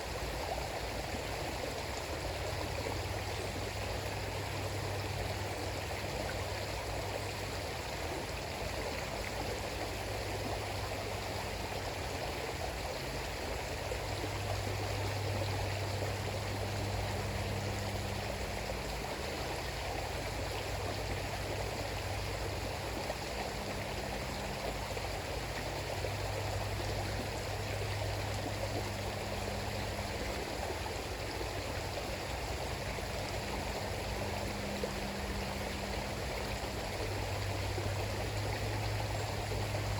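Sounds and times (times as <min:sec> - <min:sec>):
river water rushing: 0:00.0 - 0:39.9
low hum: 0:12.9 - 0:39.9.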